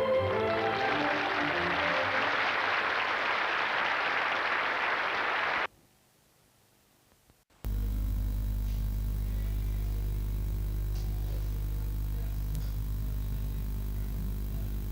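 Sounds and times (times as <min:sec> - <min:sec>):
audience applause: 0:00.0 - 0:05.7
low electrical hum: 0:06.2 - 0:14.9.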